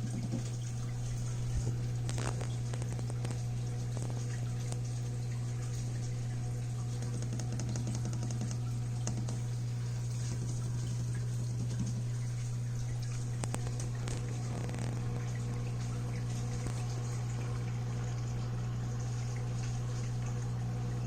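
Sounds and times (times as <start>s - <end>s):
small crackling clicks: 0.0s - 6.2s, 6.9s - 17.5s
aquarium equipment humming: 0.0s - 21.0s
water bubbling and trickling: 0.0s - 21.0s.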